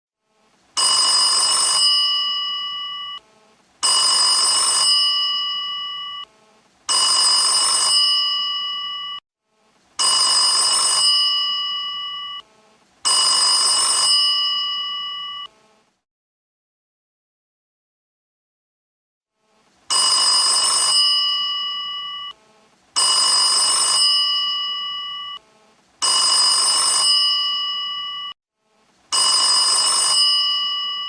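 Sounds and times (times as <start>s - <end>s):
telephone bell ringing: 0.8s - 9.2s, 10.0s - 15.7s, 19.9s - 22.4s, 23.0s - 28.4s, 29.1s - 31.0s.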